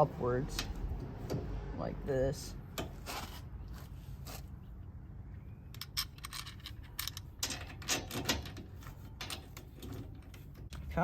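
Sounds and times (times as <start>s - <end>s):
metal hardware clicking: 5.7s - 10.9s.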